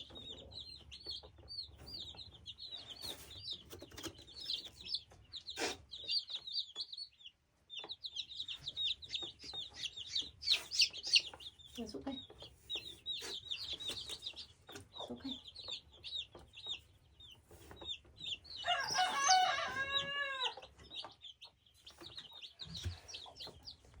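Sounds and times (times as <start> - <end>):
baby chicks peeping: 0.0 - 24.0
adult chicken calling: 18.6 - 20.7.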